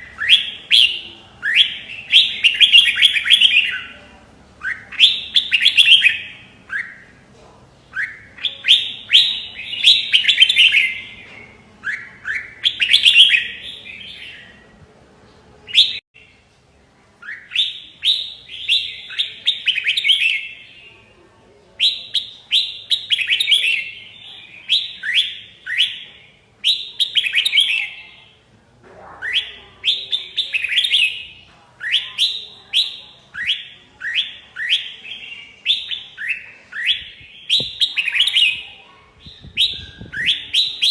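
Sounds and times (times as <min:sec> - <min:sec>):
bulbul whistled song: 0:00.0 - 0:03.9, 0:04.6 - 0:07.1, 0:07.9 - 0:14.8, 0:15.6 - 0:16.3, 0:29.3 - 0:40.9.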